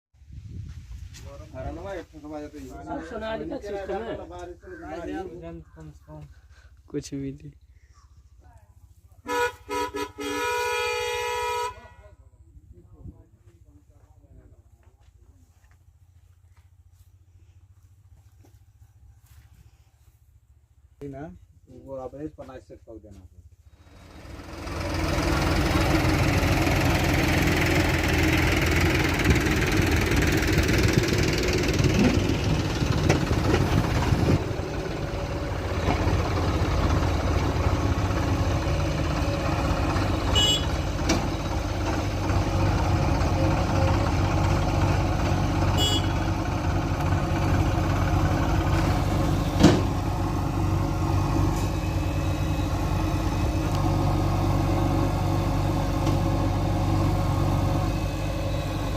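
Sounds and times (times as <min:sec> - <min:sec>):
diesel engine running: 0:23.6 - 0:58.9.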